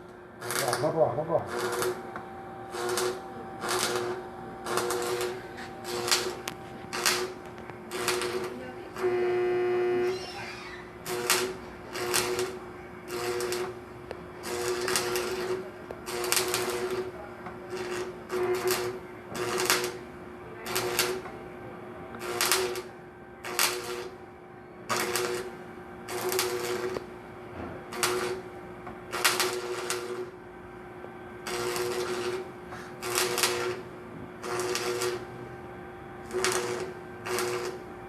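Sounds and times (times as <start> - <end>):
steady hum: 0.0 - 38.0
welding arc crackling hiss: 0.4 - 9.1, 11.0 - 13.8, 14.4 - 20.0, 20.7 - 21.2, 22.2 - 24.2, 24.9 - 27.1, 27.9 - 28.5, 29.1 - 30.4, 31.4 - 33.8, 34.4 - 35.3, 36.2 - 37.9.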